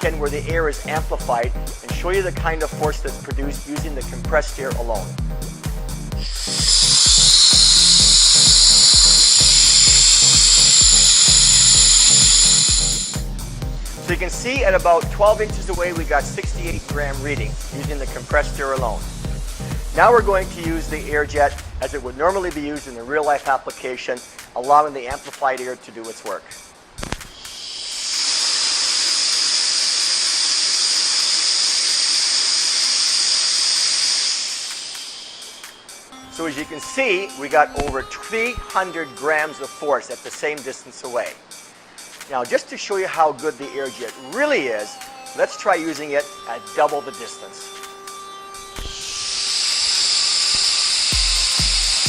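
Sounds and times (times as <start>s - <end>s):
background music with steady beat: 0.0s - 30.4s, 34.4s - 52.0s
compressed air hissing: 5.4s - 14.4s, 15.7s - 23.0s, 27.0s - 36.1s, 48.8s - 52.0s.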